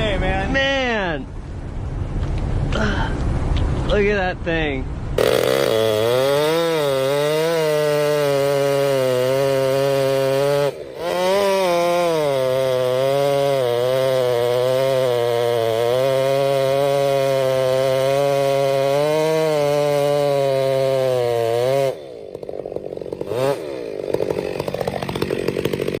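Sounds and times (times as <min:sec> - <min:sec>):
chainsaw sawing through wood: 0:05.2 - 0:26.0.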